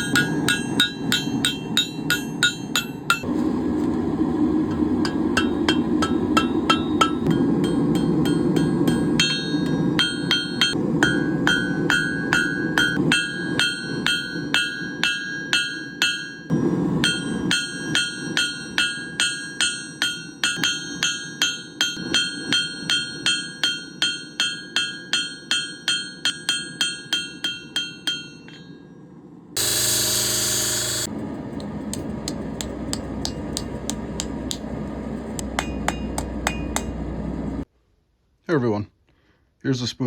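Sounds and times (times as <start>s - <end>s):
hammer striking steel on anvil: 0.0s - 3.4s, 4.6s - 28.8s, 29.6s - 31.1s, 31.9s - 37.0s.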